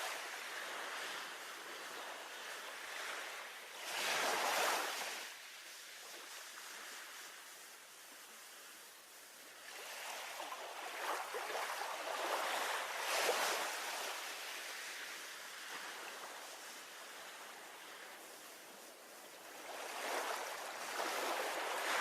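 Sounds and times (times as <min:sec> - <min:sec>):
sea waves washing against breakwater: 0:06.2 - 0:22.0.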